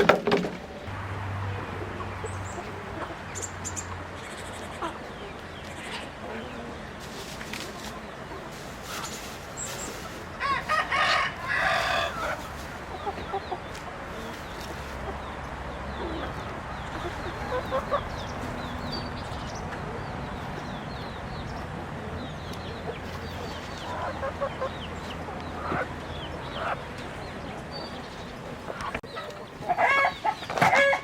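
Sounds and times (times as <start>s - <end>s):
chickens clucking: 0.0s - 31.0s
rooster crowing: 10.4s - 12.4s.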